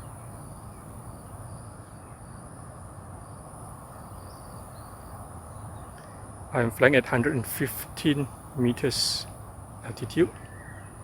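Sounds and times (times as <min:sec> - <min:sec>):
crickets trilling: 0:00.0 - 0:11.0
faint chirps: 0:08.1 - 0:11.0.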